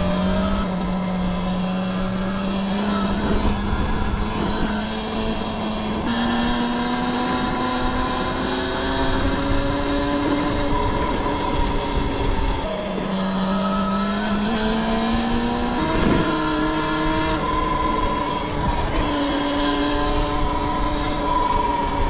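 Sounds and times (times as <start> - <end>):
electric motor whining: 0.0 - 22.0.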